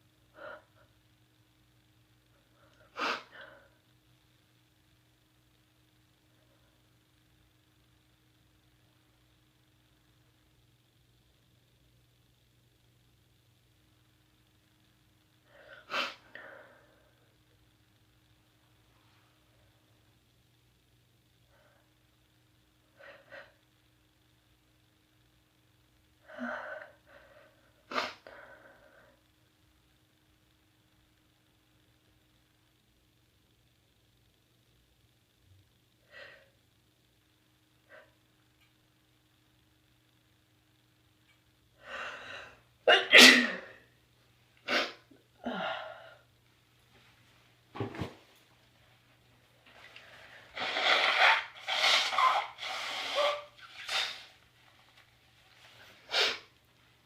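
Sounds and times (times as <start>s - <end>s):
person sneezing: 42.9s - 43.8s, 44.6s - 45.1s, 50.6s - 54.3s, 56.0s - 56.5s.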